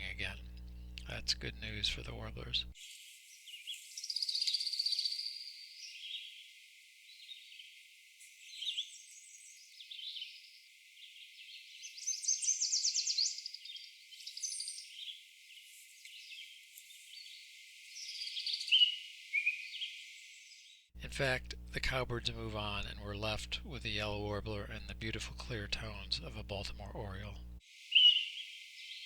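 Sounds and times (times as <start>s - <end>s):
warbler song: 0.0s - 29.0s
cowbirds calling and singing: 11.4s - 15.0s, 21.0s - 29.0s.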